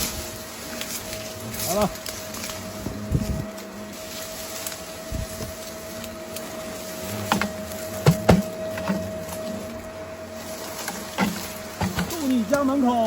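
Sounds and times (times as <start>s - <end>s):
thin high hum: 0.0s - 13.0s
knocks and clicks of hard objects: 7.3s - 9.0s, 10.9s - 12.2s.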